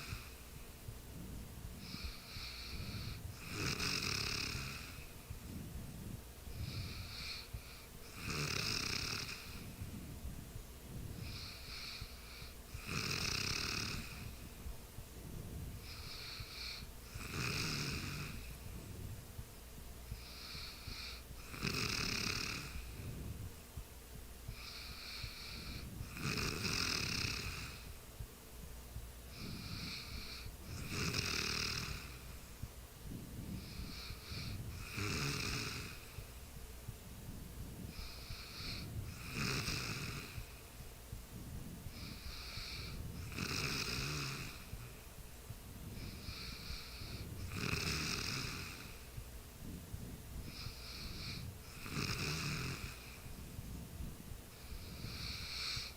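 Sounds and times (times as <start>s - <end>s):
person snoring: 1.8s - 5.1s, 6.5s - 9.8s, 11.2s - 14.4s, 15.8s - 18.5s, 20.2s - 23.1s, 24.6s - 27.9s, 29.3s - 32.2s, 33.6s - 36.2s, 37.9s - 40.6s, 41.9s - 44.8s, 46.0s - 49.0s, 50.4s - 53.2s, 54.6s - 55.9s.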